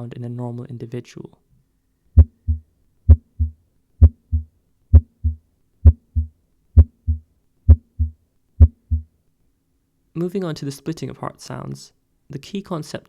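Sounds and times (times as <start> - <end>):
heartbeat lub-dub: 2.2 - 9.1.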